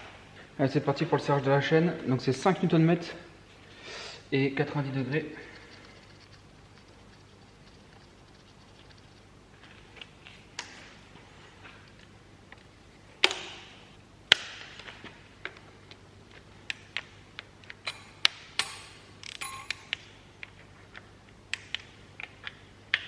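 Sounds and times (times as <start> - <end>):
metal tools clicking on metal: 18.6 - 20.0.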